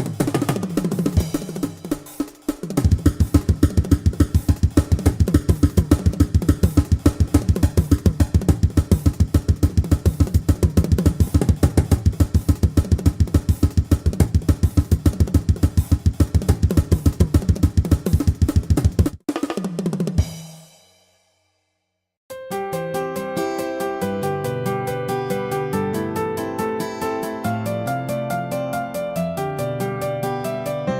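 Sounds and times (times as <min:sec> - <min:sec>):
music with fast drum beat: 0:00.0 - 0:21.4.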